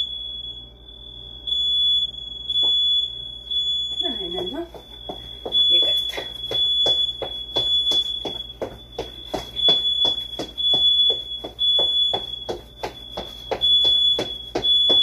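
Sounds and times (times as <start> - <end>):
house alarm pulsing tone: 0.0 - 15.0
fast even tapping: 4.1 - 15.0.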